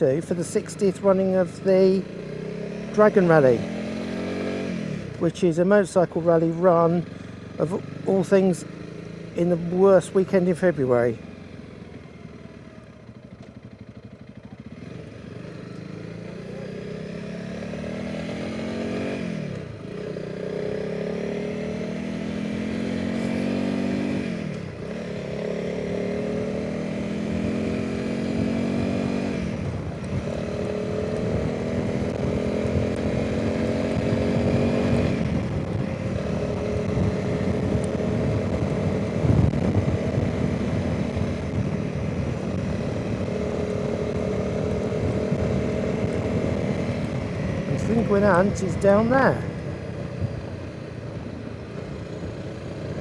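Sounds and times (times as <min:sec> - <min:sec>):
motorcycle engine accelerating: 0:00.0 - 0:53.0
wind noise on microphone: 0:33.9 - 0:43.4.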